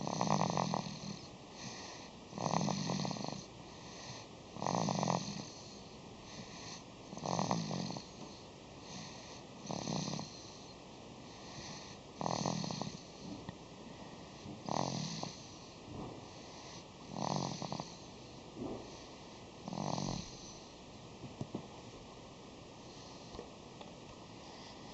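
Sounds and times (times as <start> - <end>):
person snoring: 0.0 - 5.8, 6.4 - 8.2, 8.9 - 10.7, 11.4 - 13.1, 14.6 - 15.6, 16.5 - 18.1, 19.0 - 20.7
soft breathing: 1.1 - 2.2, 3.4 - 4.4, 5.2 - 7.0, 7.6 - 12.2, 12.8 - 20.8, 22.8 - 23.6, 24.2 - 24.9.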